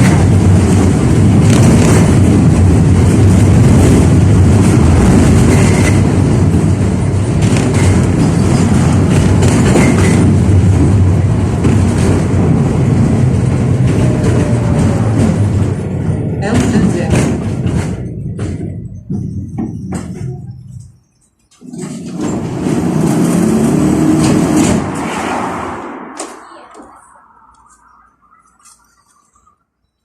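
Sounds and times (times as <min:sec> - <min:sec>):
wheels clicking over rail joints: 0:00.0 - 0:25.2
tram wheels rumbling on rails: 0:00.0 - 0:29.7.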